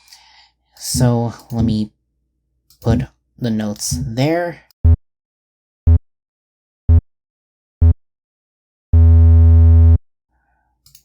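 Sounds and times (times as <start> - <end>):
low buzzing synthesizer tone: 9.0 - 10.0.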